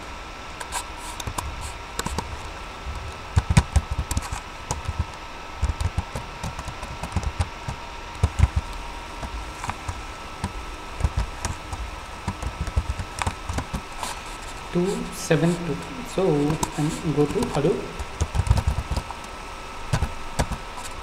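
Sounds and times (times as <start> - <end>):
faint electrical hum: 0.0 - 21.0
keyboard tapping and clicking: 5.6 - 7.5.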